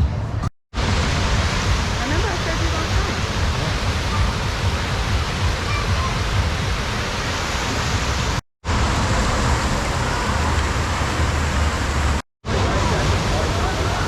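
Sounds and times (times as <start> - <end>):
heavy low rumble: 0.0 - 14.0
wind buffeting microphone: 0.8 - 12.2
running water: 0.8 - 14.0.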